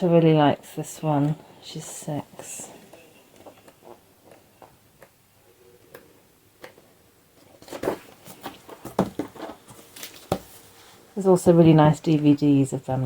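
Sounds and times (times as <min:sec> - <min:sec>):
book pages rustling: 0:07.4 - 0:11.1.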